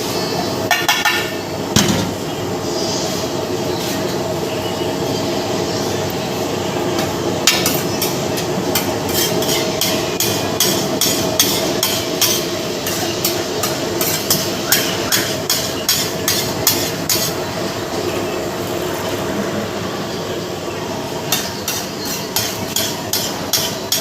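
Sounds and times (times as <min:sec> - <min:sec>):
metal spatula scraping griddle: 0:07.6 - 0:17.4, 0:21.3 - 0:24.0.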